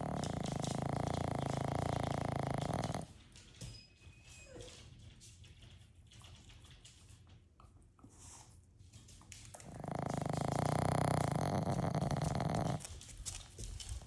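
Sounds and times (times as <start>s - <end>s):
dog snoring: 0.0s - 3.2s, 9.6s - 13.0s.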